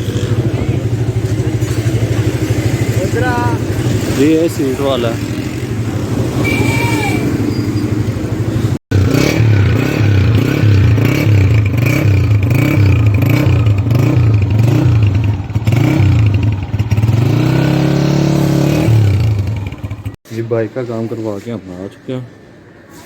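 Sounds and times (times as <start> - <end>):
motorcycle engine running and revving: 0.0 - 20.2.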